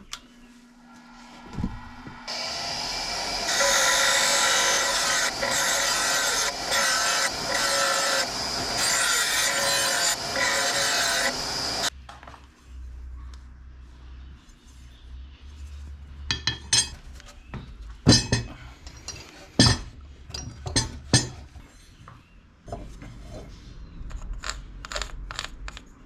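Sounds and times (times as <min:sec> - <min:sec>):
abrasive tool grinding a knife: 0:03.5 - 0:11.9.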